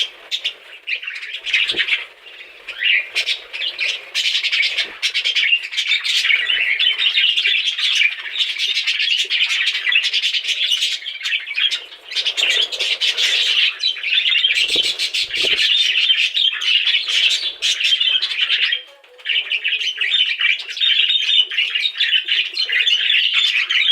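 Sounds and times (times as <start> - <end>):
budgerigars chirping and chattering: 0.0 - 23.9.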